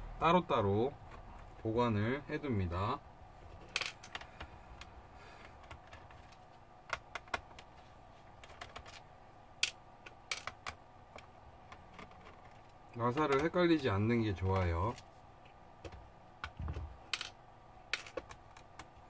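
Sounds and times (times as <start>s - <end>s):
small clicks and taps on plastic: 3.8s - 7.7s, 9.6s - 13.6s, 17.9s - 19.0s.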